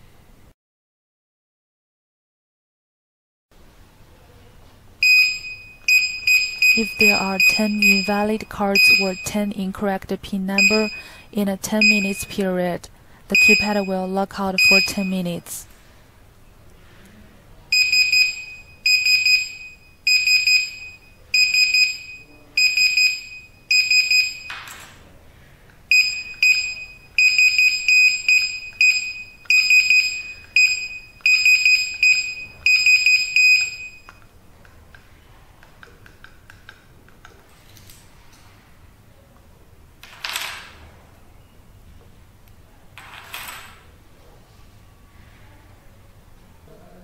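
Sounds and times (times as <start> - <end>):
keypad buzzer beeping: 5.0 - 9.6, 10.5 - 12.4, 13.3 - 15.3, 17.7 - 24.6, 25.9 - 34.2.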